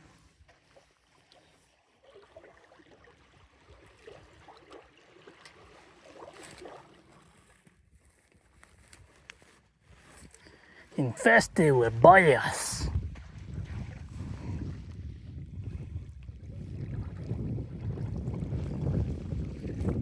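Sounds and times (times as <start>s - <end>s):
water lapping: 0.0s - 8.4s
small water splashes: 0.3s - 8.9s, 16.1s - 20.0s.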